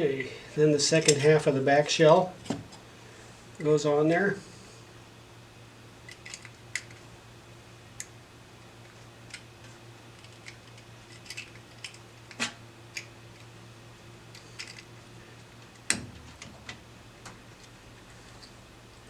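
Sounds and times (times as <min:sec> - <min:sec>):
faint steady hum: 0:00.0 - 0:19.0
connector parts clicking and tapping: 0:10.2 - 0:13.5.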